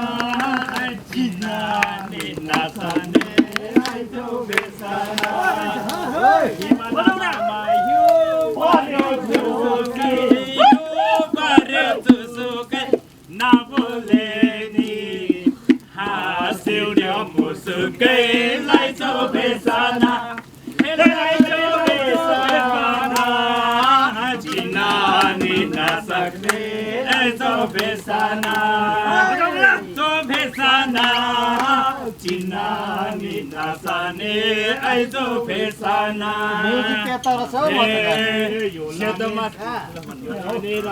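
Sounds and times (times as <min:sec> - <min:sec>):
percussive strikes: 0:00.0 - 0:06.0, 0:12.9 - 0:18.9
group singing chant-like song: 0:00.0 - 0:40.9.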